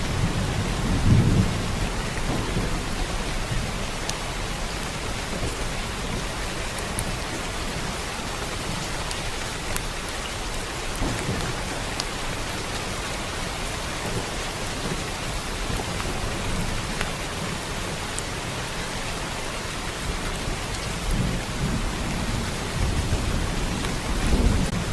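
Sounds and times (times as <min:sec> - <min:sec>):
rain drop ticks: 0:00.0 - 0:19.1, 0:19.8 - 0:24.9
steady rain hiss: 0:00.0 - 0:24.9.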